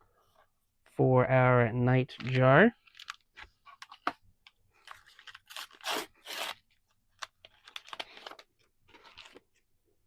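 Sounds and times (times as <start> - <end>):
trading cards and wrapper rustling: 2.1 - 9.6.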